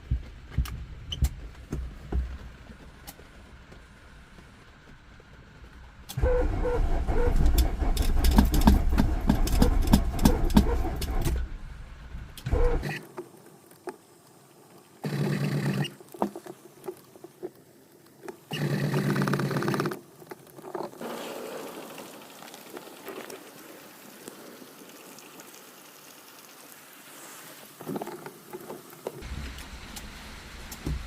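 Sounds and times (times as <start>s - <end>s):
starter motor cranking: 6.1s - 11.5s, 12.4s - 13.0s, 15.0s - 15.9s.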